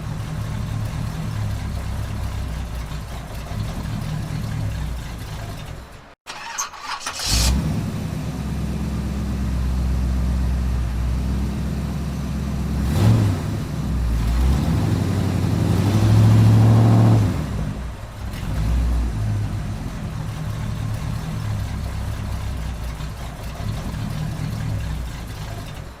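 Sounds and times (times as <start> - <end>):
car starter cranking: 0.0 - 8.4, 20.0 - 26.0
car engine idling and revving: 0.0 - 26.0.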